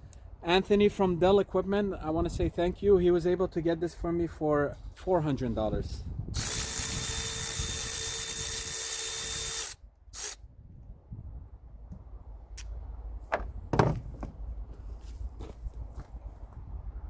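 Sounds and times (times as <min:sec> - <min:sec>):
power drill whining: 0:06.4 - 0:10.4
tools and parts knocking: 0:13.3 - 0:14.4.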